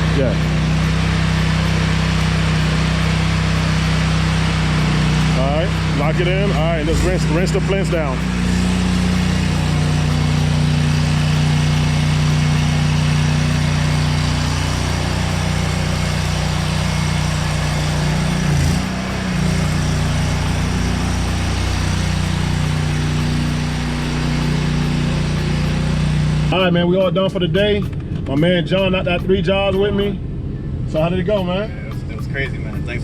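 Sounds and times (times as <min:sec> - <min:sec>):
water spraying hiss: 0:00.0 - 0:26.5
pressure washer engine running: 0:00.0 - 0:27.9.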